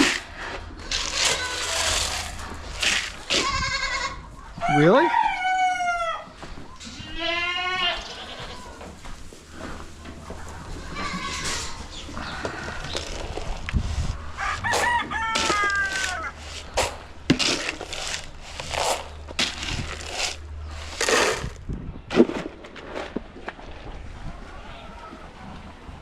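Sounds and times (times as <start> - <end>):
rooster crowing: 4.6 - 6.4, 14.3 - 16.4
chickens clucking: 8.0 - 21.5.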